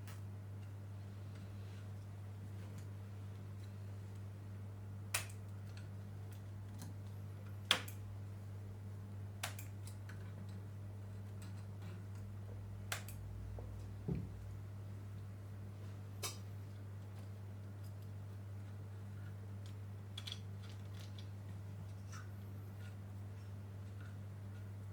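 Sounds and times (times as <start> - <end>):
tools and parts clicking: 19.6 - 21.3.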